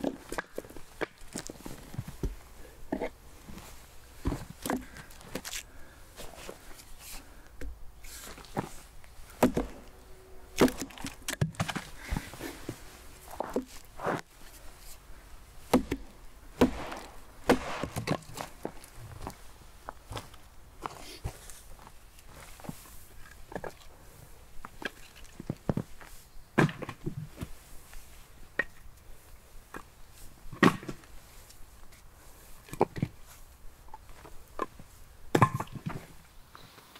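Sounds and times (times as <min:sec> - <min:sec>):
sticks knocking and snapping: 0:09.4 - 0:09.9, 0:10.6 - 0:12.3, 0:15.7 - 0:18.8.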